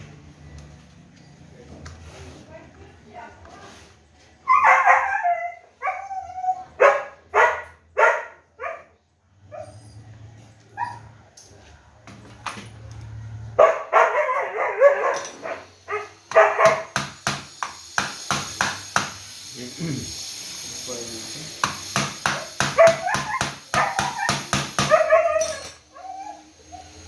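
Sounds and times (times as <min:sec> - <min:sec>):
dog barking: 0:04.5 - 0:06.0, 0:06.8 - 0:09.7, 0:13.6 - 0:16.9, 0:22.7 - 0:26.1.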